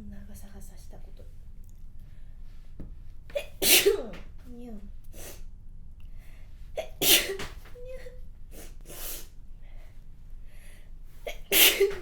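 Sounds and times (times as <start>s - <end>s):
woman sneezing: 3.4s - 4.1s, 6.8s - 7.5s, 11.3s - 12.0s.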